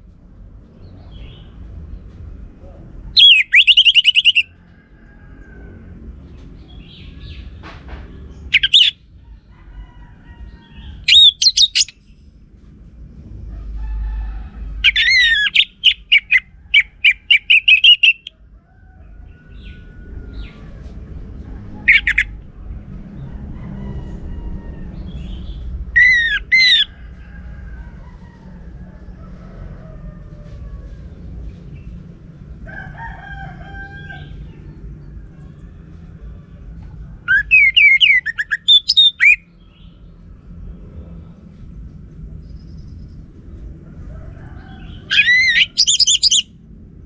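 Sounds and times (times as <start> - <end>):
thrush whistling song: 3.2 - 4.5, 8.5 - 9.0, 11.0 - 12.0, 14.8 - 18.3, 21.9 - 22.3, 26.0 - 26.9, 37.3 - 39.4, 45.1 - 46.5
low background rumble: 5.3 - 18.4, 19.1 - 29.4, 34.2 - 47.0.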